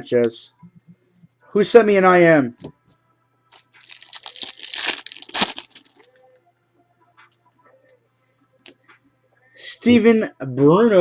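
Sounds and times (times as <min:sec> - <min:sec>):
foil wrapper tearing and crinkling: 0:03.5 - 0:06.0.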